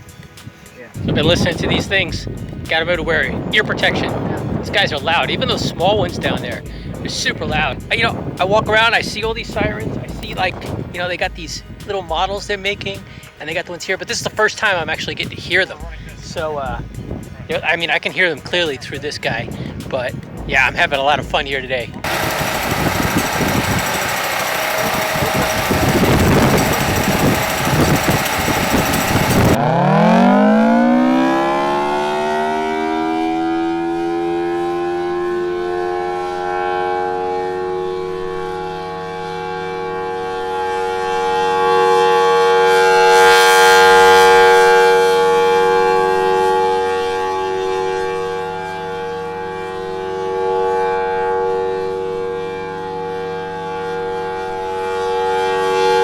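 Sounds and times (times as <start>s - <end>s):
loud rushing noise: 22.0s - 29.6s
air raid siren wailing: 22.0s - 56.0s.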